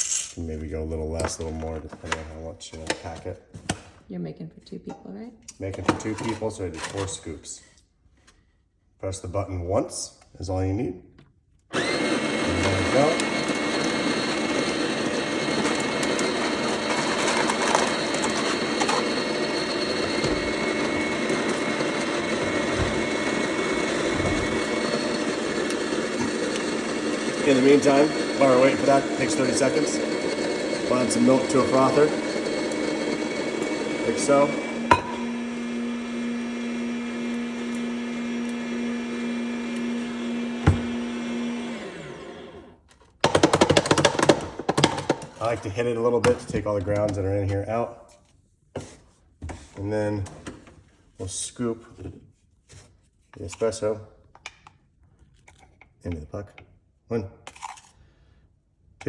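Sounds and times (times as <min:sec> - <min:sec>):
electric coffee grinder running: 0:11.7 - 0:45.2
sharp knocks on grinder: 0:40.6 - 0:40.9.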